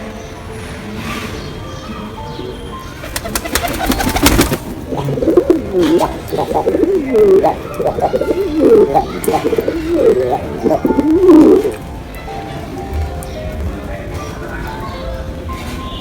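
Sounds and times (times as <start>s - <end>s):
pigeon cooing: 3.0s - 11.9s.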